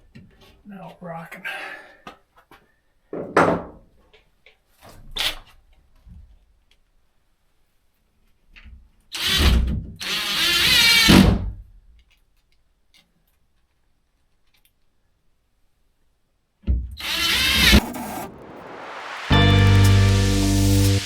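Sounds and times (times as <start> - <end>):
power drill in short bursts: 9.2 - 11.2.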